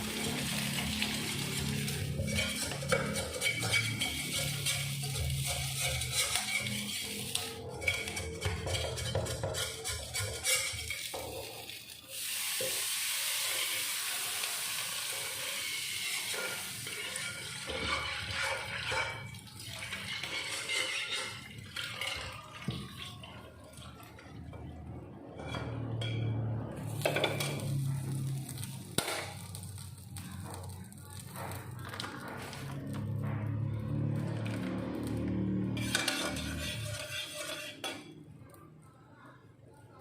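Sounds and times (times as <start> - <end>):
pots and utensils clattering: 0.0 - 38.4
water running into sink: 10.8 - 24.2.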